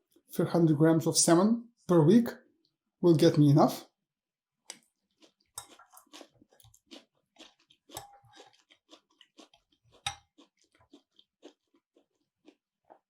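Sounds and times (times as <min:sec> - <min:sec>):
chewing food: 0:04.6 - 0:13.0.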